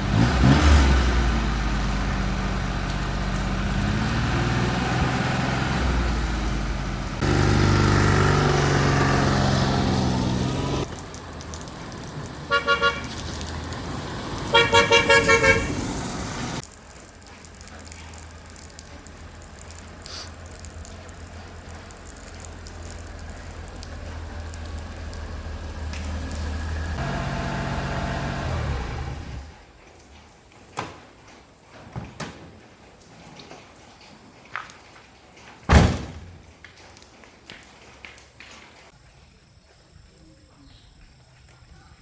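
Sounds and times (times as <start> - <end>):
car engine running: 0.0 - 10.9, 23.1 - 29.6
car horn short toots: 12.5 - 13.1, 14.5 - 15.9
loud thump: 35.7 - 36.4.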